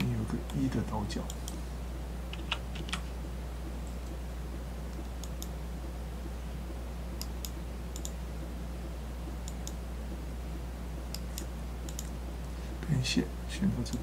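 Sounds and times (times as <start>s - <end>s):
low electrical hum: 0.0s - 14.0s
computer mouse clicking: 2.3s - 3.1s, 4.9s - 5.6s, 7.2s - 8.2s, 9.4s - 9.8s, 11.1s - 12.2s.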